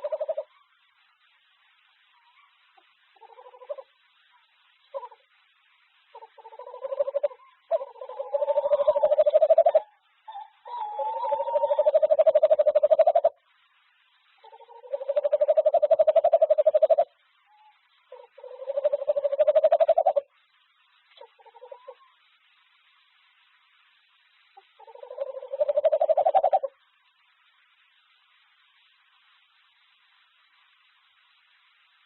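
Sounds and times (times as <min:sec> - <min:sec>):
owl trilling call: 0:00.0 - 0:00.8, 0:03.2 - 0:04.0, 0:04.8 - 0:05.2, 0:06.1 - 0:13.4, 0:14.4 - 0:20.3, 0:21.2 - 0:22.2, 0:24.6 - 0:26.8.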